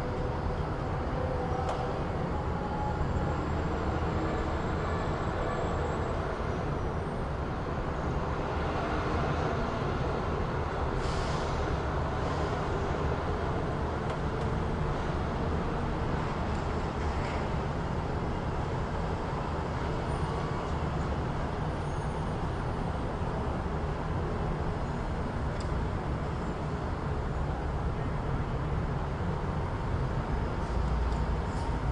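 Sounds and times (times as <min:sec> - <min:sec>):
rumble of passing vehicles: 0:00.0 - 0:31.9.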